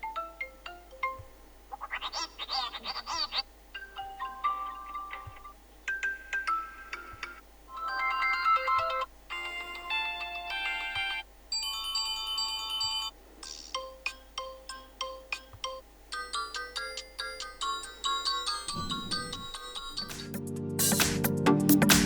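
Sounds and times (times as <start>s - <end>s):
phone ringtone melodies: 3.8s - 13.1s, 14.4s - 20.4s.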